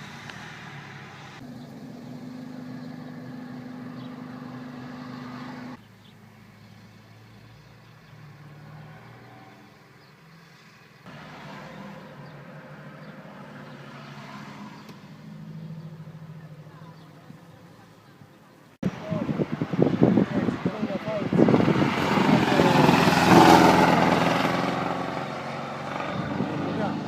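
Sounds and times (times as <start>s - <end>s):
car engines running at low revs: 0.0s - 8.0s, 14.8s - 27.0s.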